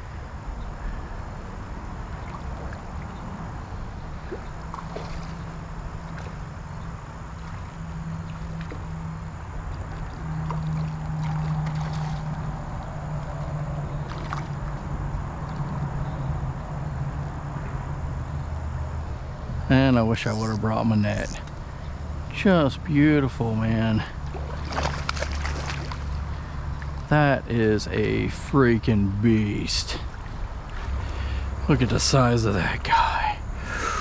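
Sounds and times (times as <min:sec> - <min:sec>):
droning hum: 0:00.0 - 0:34.0
low outdoor rumble: 0:00.0 - 0:34.0.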